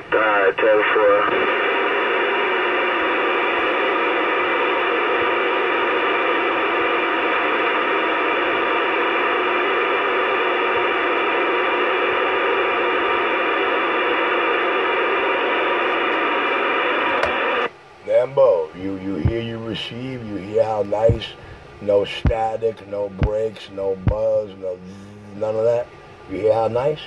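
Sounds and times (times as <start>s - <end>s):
radio static hiss: 0.0s - 27.0s.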